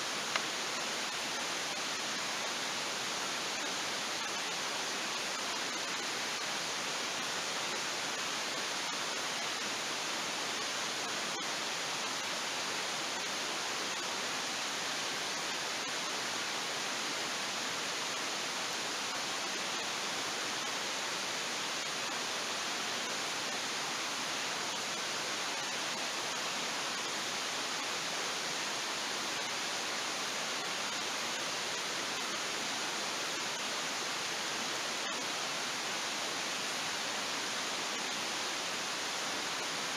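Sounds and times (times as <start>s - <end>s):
faint ticks: 0.3s - 0.5s.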